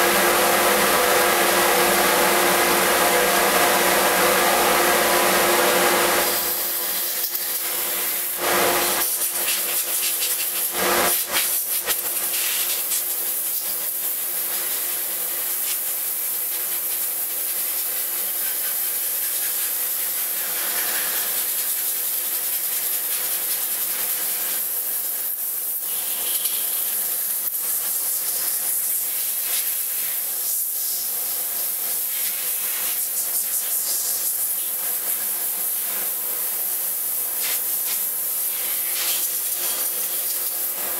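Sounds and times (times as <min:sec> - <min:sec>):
sandpaper rubbing on wood: 0:15.6 - 0:25.4, 0:37.4 - 0:40.4.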